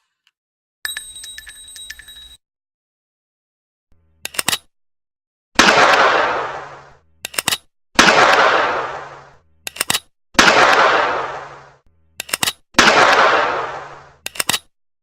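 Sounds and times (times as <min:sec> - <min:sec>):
revolver shots with echo: 0:08.0 - 0:09.4, 0:10.4 - 0:11.7, 0:12.8 - 0:14.1.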